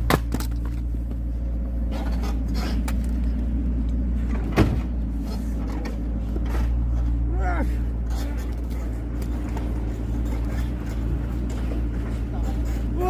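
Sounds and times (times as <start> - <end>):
firewood being split: 0.0 - 1.2
steady engine hum: 0.0 - 13.0.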